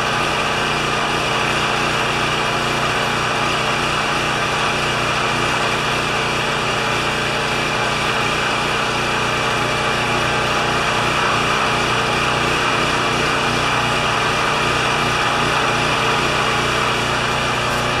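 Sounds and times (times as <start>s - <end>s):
generator engine running: 0.0s - 18.0s.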